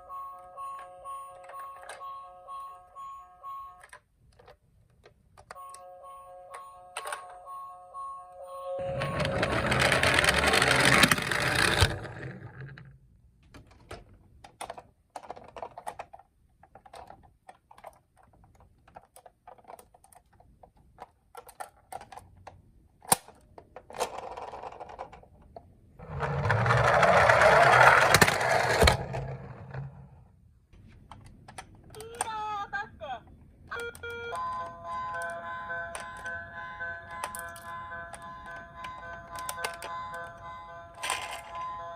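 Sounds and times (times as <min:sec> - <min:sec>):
toy cars clicking and clattering: 0:08.8 - 0:30.1, 0:33.8 - 0:41.9.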